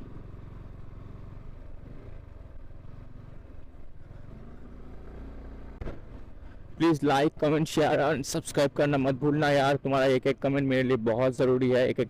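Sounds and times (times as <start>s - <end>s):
motorcycle engine running: 0.0s - 5.8s.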